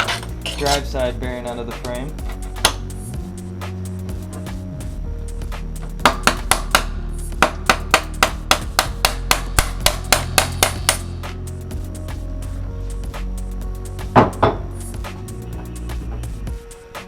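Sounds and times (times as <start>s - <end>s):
hammer striking metal punch: 6.0s - 11.1s.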